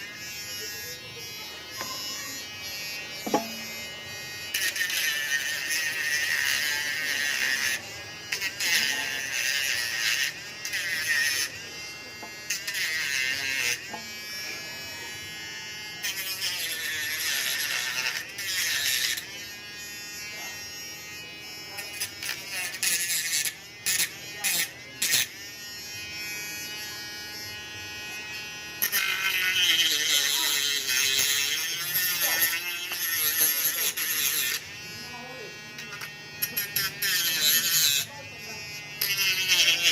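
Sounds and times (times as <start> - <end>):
power tool motor whine: 0.0 - 11.5.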